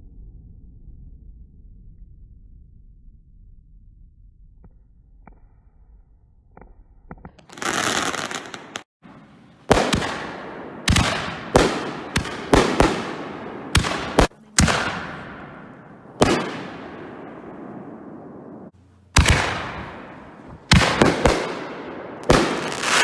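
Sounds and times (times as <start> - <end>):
firework rushing hiss: 7.5 - 15.2, 19.2 - 23.0
firework bangs echoing: 7.5 - 23.0.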